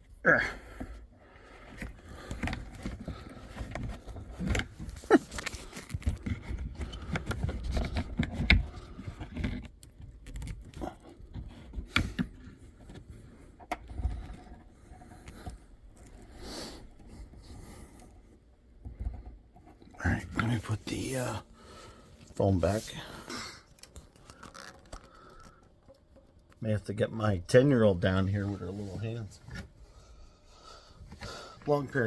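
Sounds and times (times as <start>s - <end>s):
hands rustling and scraping plastic: 1.4s - 26.6s.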